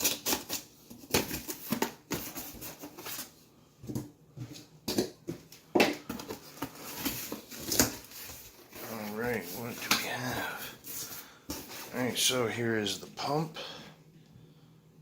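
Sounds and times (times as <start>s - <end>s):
packaging rustling: 4.9s - 12.4s
cardboard box being opened: 6.1s - 11.9s.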